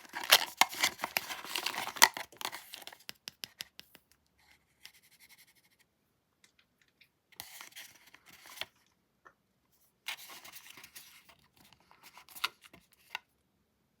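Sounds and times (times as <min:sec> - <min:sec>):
candy wrapper tearing and crinkling: 0:00.0 - 0:03.0.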